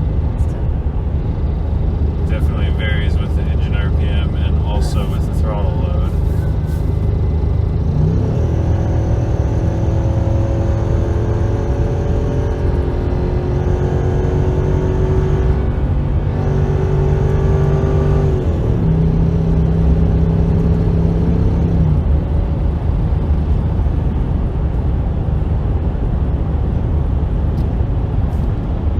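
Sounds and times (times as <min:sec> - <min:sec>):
engine ticking: 0:00.0 - 0:08.0
car engine running: 0:00.0 - 0:28.9.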